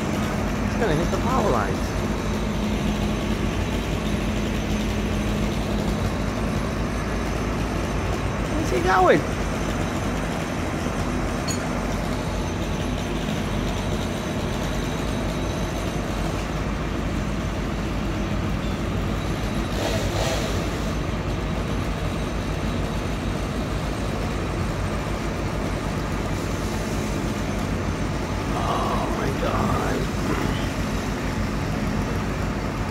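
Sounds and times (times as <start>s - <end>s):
large engine rumbling: 0.0s - 32.9s.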